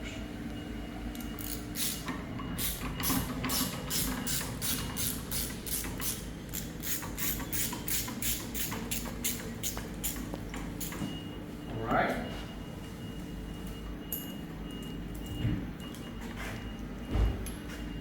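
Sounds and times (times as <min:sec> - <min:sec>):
ratchet wrench clicking: 0:03.9 - 0:10.2.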